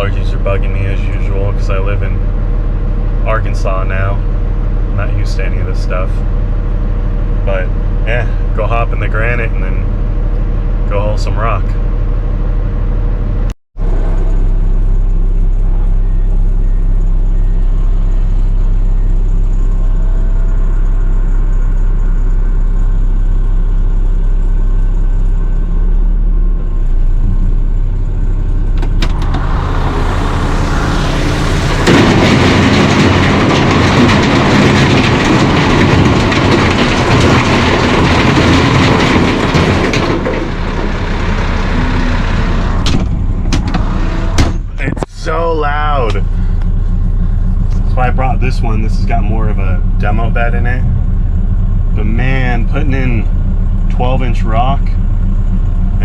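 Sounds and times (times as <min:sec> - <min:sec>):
diesel truck engine idling: 0:00.0 - 0:56.0
rock dumped into steel bed: 0:31.8 - 0:40.8.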